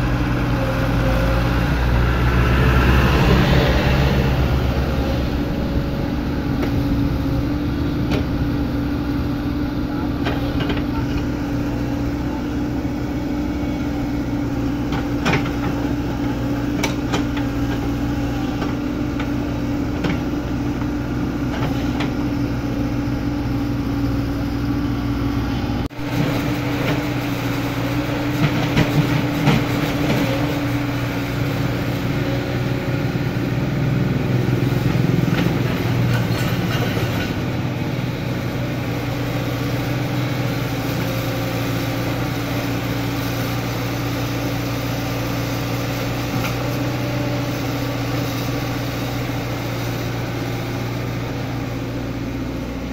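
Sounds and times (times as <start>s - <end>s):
excavator diesel engine running: 0.0s - 52.9s.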